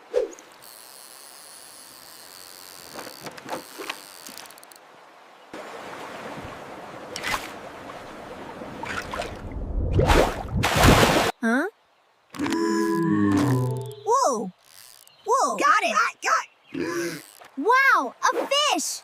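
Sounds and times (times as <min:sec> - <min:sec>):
water ambience: 0:00.0 - 0:19.0
short water splashes: 0:05.5 - 0:11.4.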